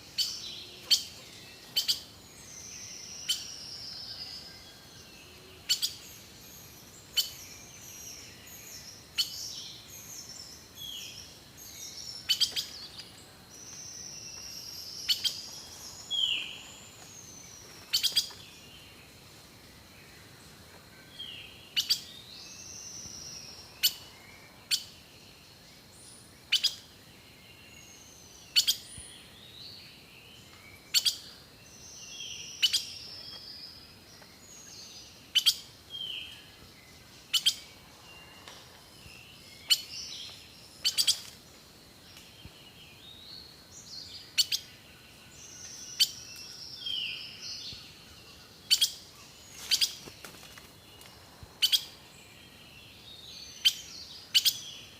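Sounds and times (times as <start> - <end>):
bird whistled song: 0.2 - 4.6, 28.5 - 29.1, 32.2 - 33.3, 37.3 - 37.7, 48.7 - 49.0, 51.6 - 52.0, 53.5 - 54.9.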